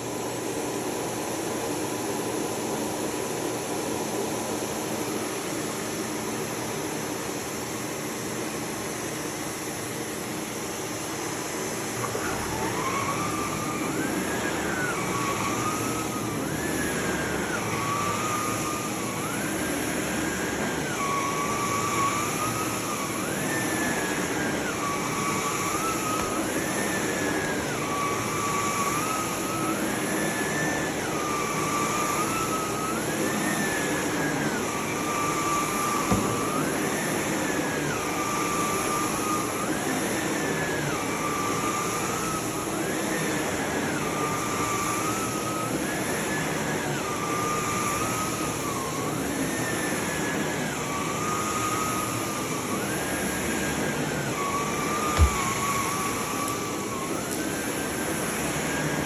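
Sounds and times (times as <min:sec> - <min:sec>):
vacuum cleaner motor whine: 0:00.0 - 0:59.0
knock: 0:36.1 - 0:36.4, 0:55.2 - 0:55.4.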